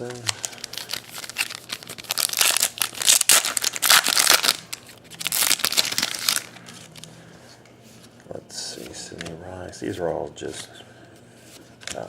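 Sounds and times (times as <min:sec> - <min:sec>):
wrapper crinkling: 0:00.0 - 0:07.2.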